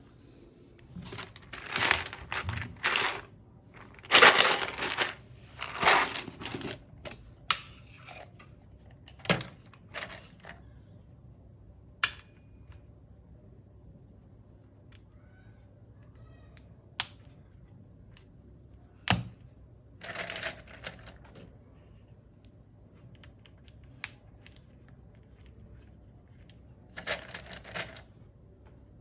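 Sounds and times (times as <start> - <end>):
keyboard parts clattering: 0.9 - 3.2, 3.8 - 6.9, 26.9 - 28.1.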